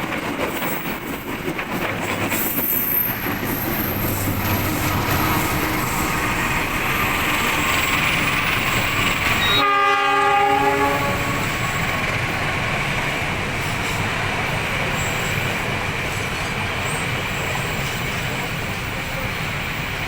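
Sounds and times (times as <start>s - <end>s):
passing train running: 0.0s - 20.0s
train horn blast: 4.6s - 7.2s, 9.4s - 11.6s.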